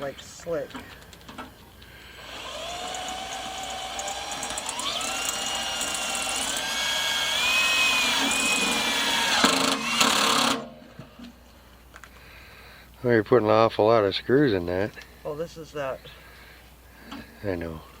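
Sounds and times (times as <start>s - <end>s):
electric screw gun whining: 2.2s - 10.7s
screw gun clicks: 2.5s - 7.4s.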